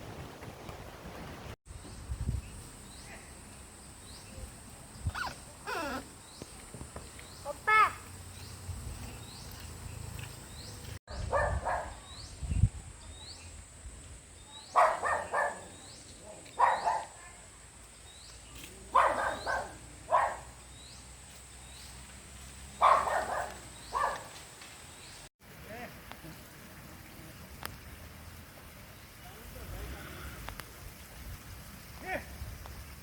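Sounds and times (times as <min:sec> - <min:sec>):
animal calling in short bursts: 0:05.1 - 0:06.1.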